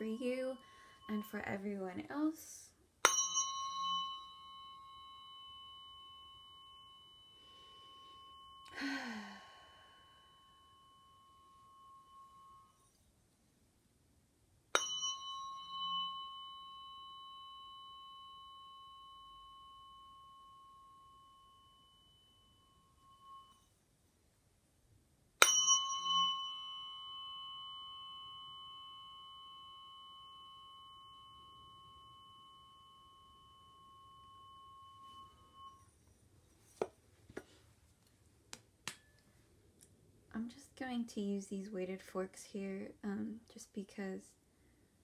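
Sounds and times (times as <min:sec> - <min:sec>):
tuning fork ringing: 0:00.0 - 0:13.2, 0:14.6 - 0:24.2, 0:25.3 - 0:37.6.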